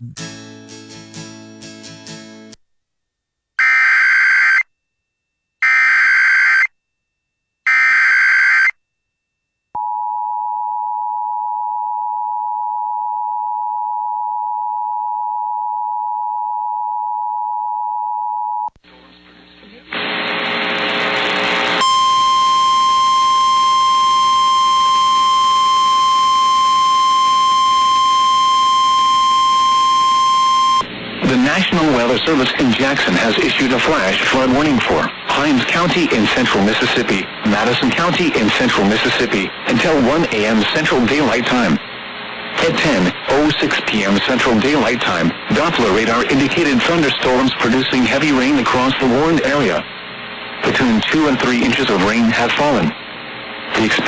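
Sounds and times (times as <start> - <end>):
screeching digital header bursts: 3.6 - 4.6, 5.6 - 6.7, 7.7 - 8.7
steady alarm tone over static: 3.6 - 4.7, 5.6 - 6.7, 7.7 - 8.8, 21.4 - 41.8
two-tone attention signal: 21.8 - 30.8.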